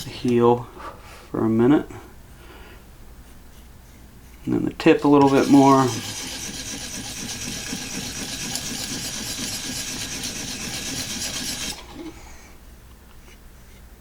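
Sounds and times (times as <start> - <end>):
sharpener scraping knife edge: 5.0 - 11.9.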